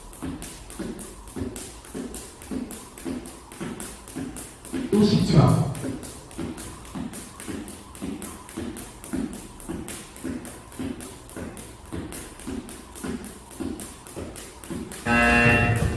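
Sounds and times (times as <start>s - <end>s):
skipping rope striking floor: 0.0s - 15.9s
dull thumps: 15.1s - 15.9s.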